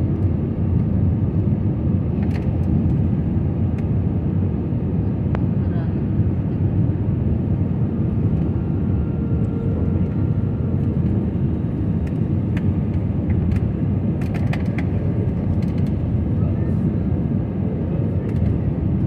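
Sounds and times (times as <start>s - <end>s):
jet engine rumble in cabin: 0.0s - 19.0s.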